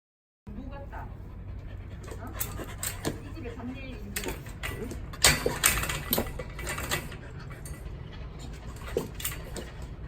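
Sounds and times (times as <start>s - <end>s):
dog claws clicking and tapping: 4.0s - 7.8s.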